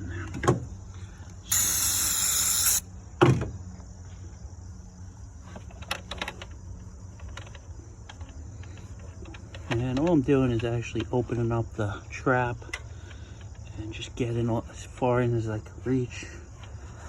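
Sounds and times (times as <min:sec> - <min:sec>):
aerosol can spraying: 0:01.5 - 0:02.8.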